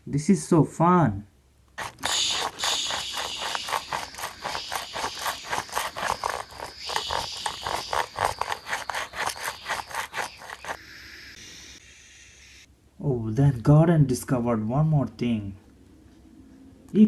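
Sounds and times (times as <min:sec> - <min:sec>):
plastic toy scraping clatter: 0:01.8 - 0:10.8.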